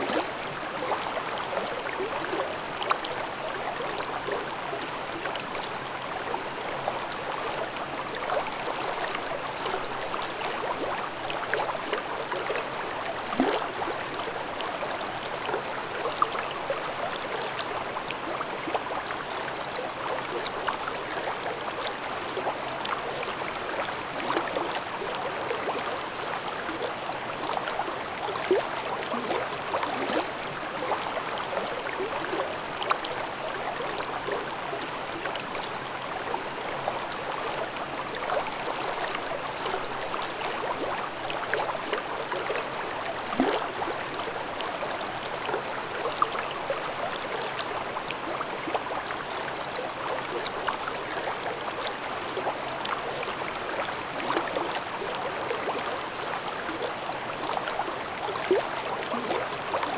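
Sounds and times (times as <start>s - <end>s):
stream babbling over rocks: 0.0s - 59.9s.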